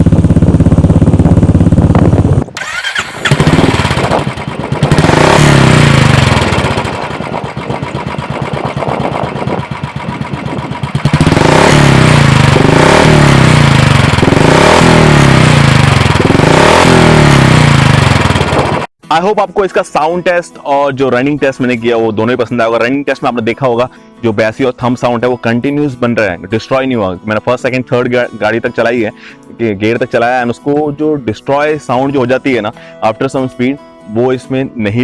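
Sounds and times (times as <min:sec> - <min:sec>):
motorcycle engine revving: 0:00.0 - 0:18.9.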